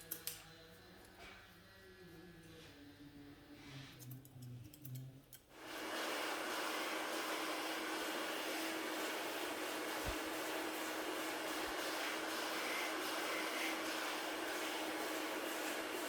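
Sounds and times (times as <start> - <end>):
hair dryer blowing: 5.6 - 16.0.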